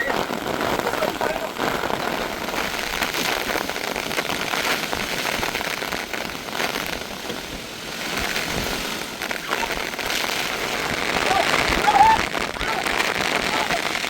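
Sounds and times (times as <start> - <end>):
heavy rain falling: 0.0 - 14.0.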